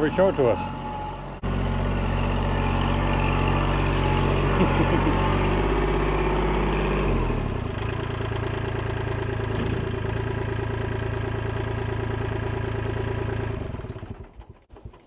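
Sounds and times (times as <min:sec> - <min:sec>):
diesel tractor engine idling: 0:00.0 - 0:15.0.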